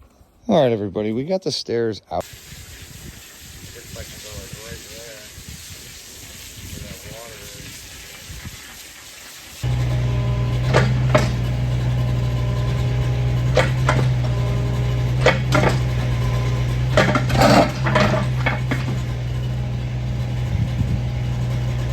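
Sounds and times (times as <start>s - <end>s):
engine idling: 9.6s - 21.9s
short knocks and clanks: 9.6s - 21.9s.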